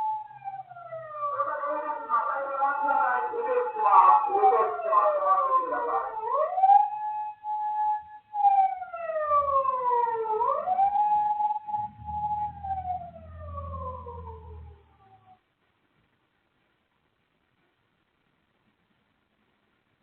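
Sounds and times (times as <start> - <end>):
police siren wailing: 0.0 - 15.4
low hum: 11.7 - 15.4.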